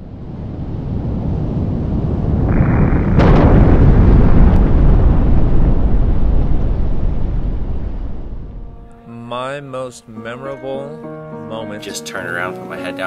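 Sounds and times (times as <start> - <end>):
deep rumbling roar: 0.0 - 9.0
sharp crack: 2.5 - 9.1.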